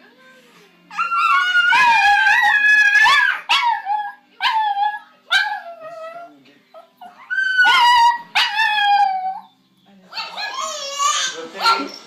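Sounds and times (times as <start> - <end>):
dog howling: 0.9 - 6.3, 7.0 - 9.5.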